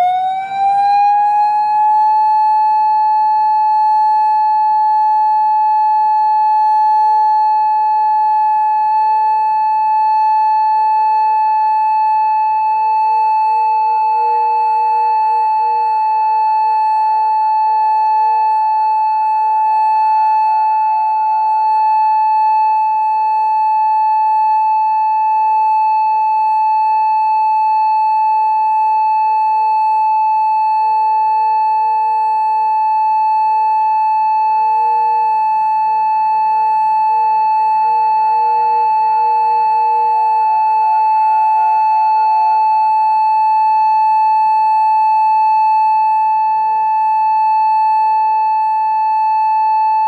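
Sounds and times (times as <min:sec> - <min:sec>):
steady single-tone siren: 0:00.0 - 0:50.0.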